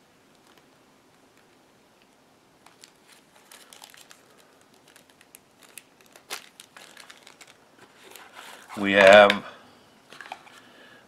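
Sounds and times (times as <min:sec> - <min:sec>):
plastic bag crinkling: 0:02.6 - 0:09.3.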